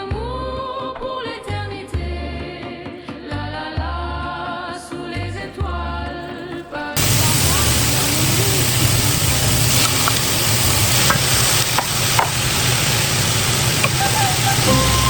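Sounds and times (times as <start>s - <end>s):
vegetables sizzling in a pan: 7.0s - 15.0s.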